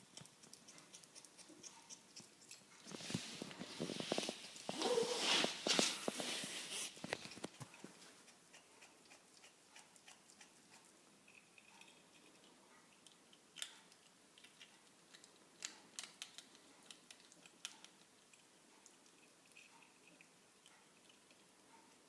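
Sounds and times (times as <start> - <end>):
ferret eating with sharp clicks: 0.0 - 4.7, 7.0 - 22.0.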